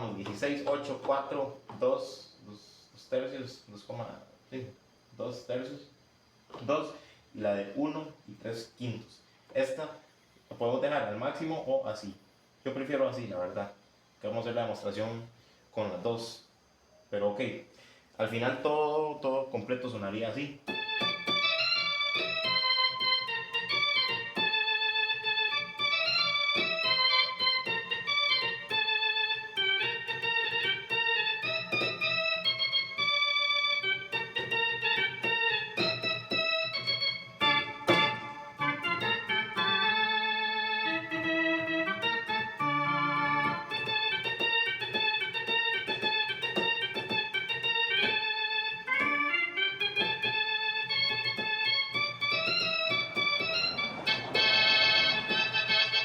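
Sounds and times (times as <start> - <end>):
organ playing cumbia melody: 0.0 - 2.2, 19.8 - 56.0.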